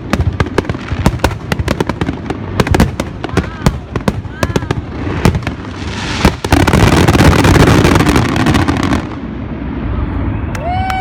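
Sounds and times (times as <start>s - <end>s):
fireworks bangs and crackling: 0.0s - 10.5s
lingering rumble: 0.0s - 11.0s.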